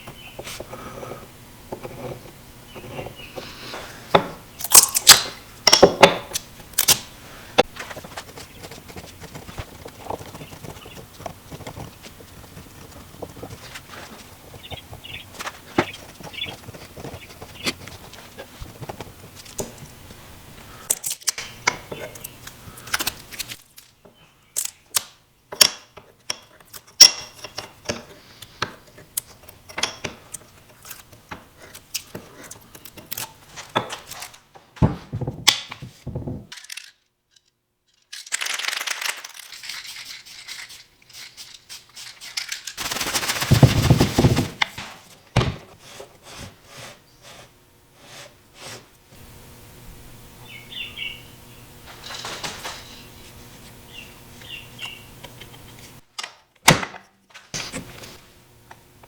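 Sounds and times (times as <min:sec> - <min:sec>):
scraping wood: 0:00.4 - 0:04.4, 0:07.6 - 0:19.8, 0:39.5 - 0:48.9
tools tapping on wood: 0:04.1 - 0:07.0.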